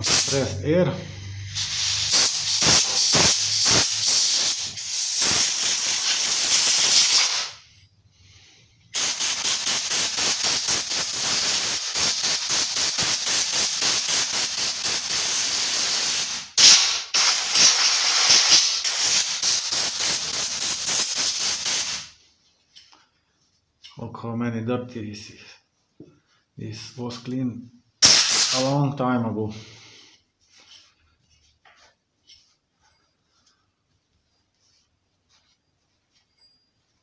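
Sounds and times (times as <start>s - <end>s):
compressed air hissing: 0.0s - 22.1s, 28.0s - 28.7s.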